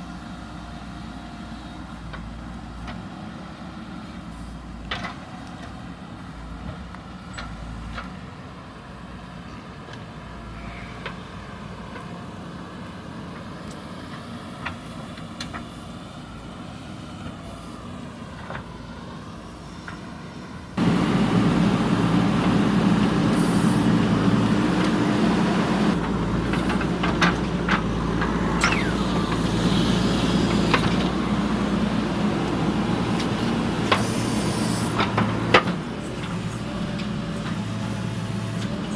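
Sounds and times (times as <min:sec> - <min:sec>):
diesel engine running: 0:20.3 - 0:38.9.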